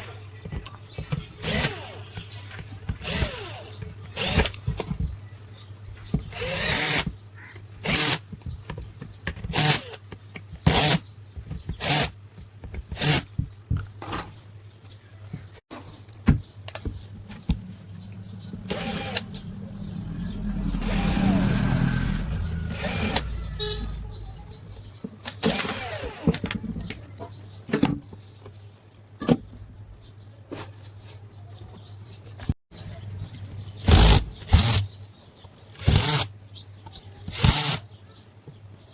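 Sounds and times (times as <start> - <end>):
steady low hum: 16.8 - 25.0.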